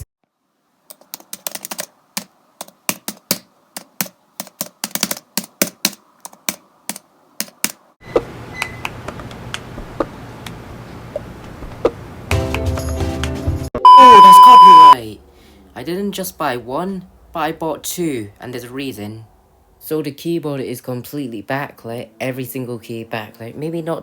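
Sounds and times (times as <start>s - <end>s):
music: 12.3s - 13.8s.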